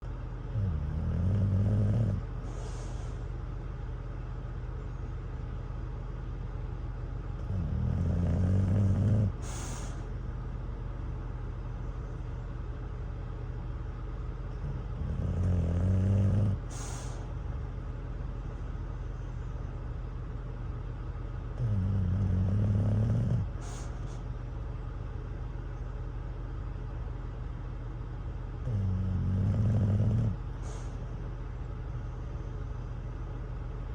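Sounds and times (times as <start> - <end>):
low hum: 0.0 - 33.9
dog snoring: 0.5 - 3.2, 7.4 - 10.1, 14.5 - 17.3, 21.6 - 24.2, 28.6 - 31.2
hissing breath out: 2.4 - 3.3, 9.4 - 10.1, 16.6 - 17.4, 23.5 - 24.2, 30.6 - 31.1.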